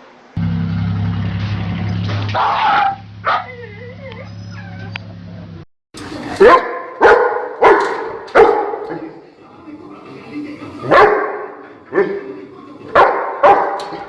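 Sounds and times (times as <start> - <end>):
low hum: 0.4 - 5.6
dog barking sharply: 2.3 - 3.5, 6.4 - 9.0, 13.0 - 14.0
dog whining: 2.4 - 5.0.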